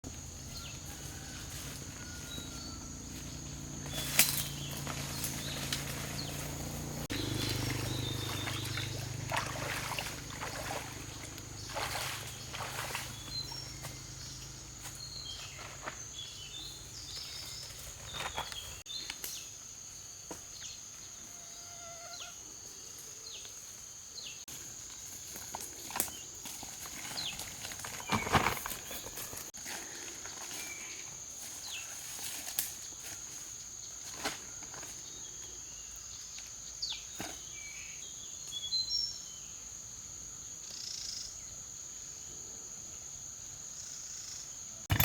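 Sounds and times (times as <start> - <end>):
insect drone: 0.1 - 45.0
birds chirping: 2.0 - 19.2
low hum: 3.1 - 13.6.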